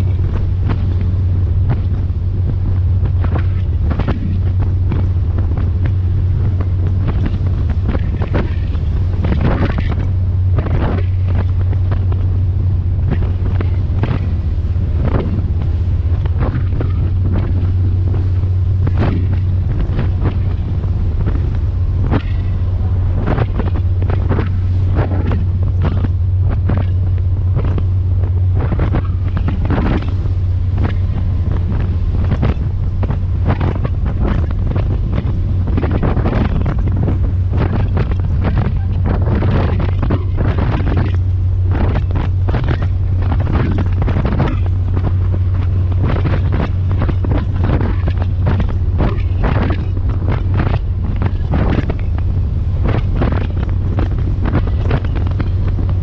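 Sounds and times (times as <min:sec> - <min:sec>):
ferry engines humming: 0:00.0 - 0:56.0
wind buffeting microphone: 0:00.0 - 0:56.0.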